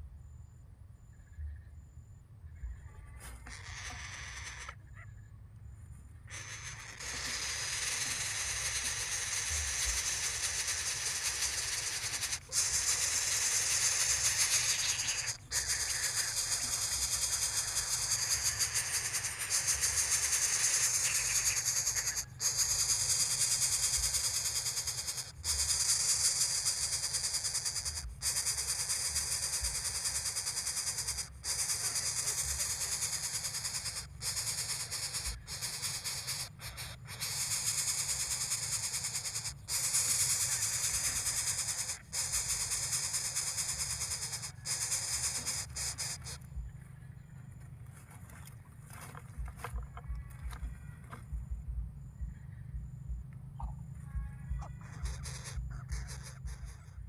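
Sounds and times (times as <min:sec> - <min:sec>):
high-pitched hissing drone: 0:06.3 - 0:46.4.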